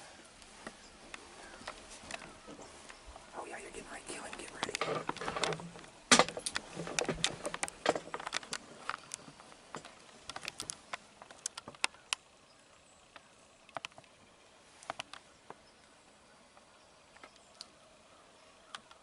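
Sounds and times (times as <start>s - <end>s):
clicks and taps of gear handling: 4.6s - 12.2s.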